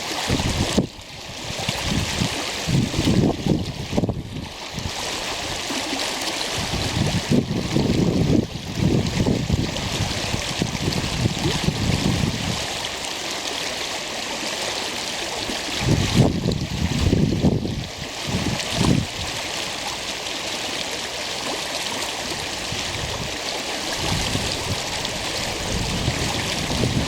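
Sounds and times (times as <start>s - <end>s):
stream water rushing: 0.0s - 27.0s
wind buffeting microphone: 0.3s - 5.6s, 6.5s - 12.8s, 15.8s - 19.4s, 22.3s - 27.0s.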